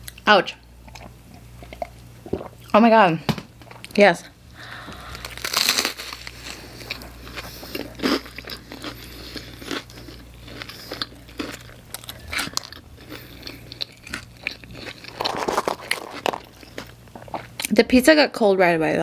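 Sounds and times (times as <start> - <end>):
crunchy chewing: 5.1 - 17.7.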